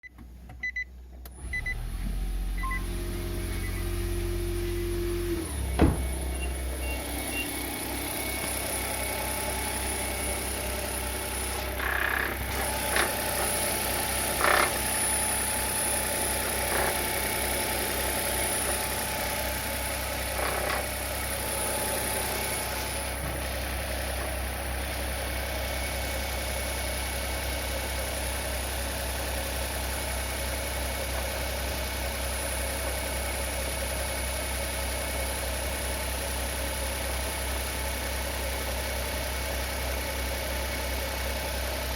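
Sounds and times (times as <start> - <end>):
car engine starting and running: 0.2 - 41.9
short drill-like whirring bursts: 9.3 - 19.1.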